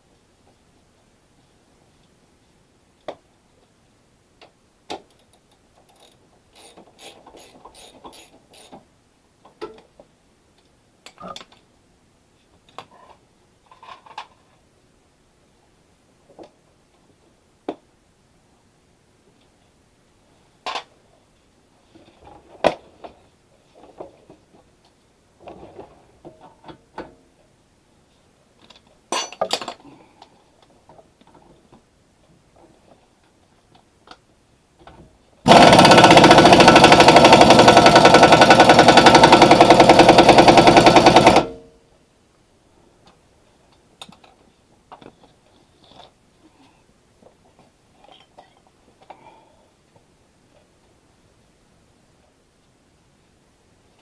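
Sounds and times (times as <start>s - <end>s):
loud rapid hammering: 35.5s - 41.6s.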